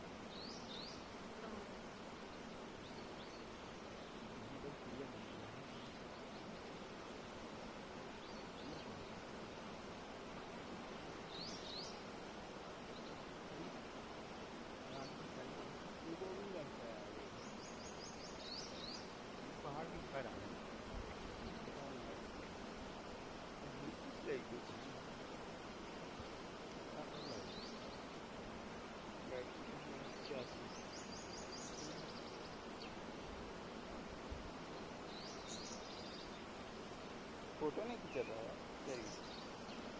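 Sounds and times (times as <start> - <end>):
running water rushing: 0.0 - 39.9
bird chirping faintly: 12.9 - 20.4, 26.9 - 28.2, 29.1 - 33.2, 34.6 - 36.8, 37.6 - 39.9.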